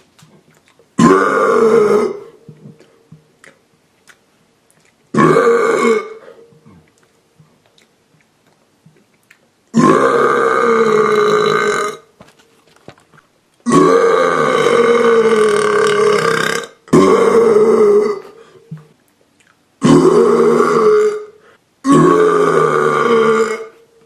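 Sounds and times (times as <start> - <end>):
person burping: 1.0 - 2.8, 5.1 - 6.9, 9.7 - 12.1, 13.6 - 18.4, 19.8 - 23.8.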